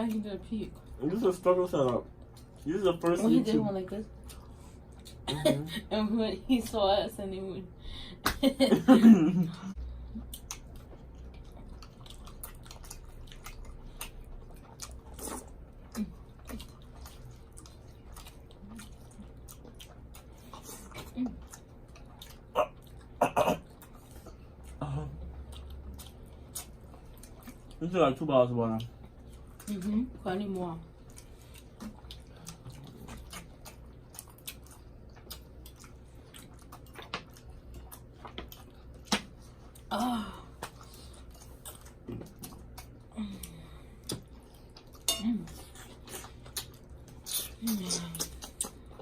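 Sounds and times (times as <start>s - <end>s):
person chewing food: 4.1s - 5.3s, 9.4s - 27.9s, 28.7s - 29.9s, 30.9s - 49.0s.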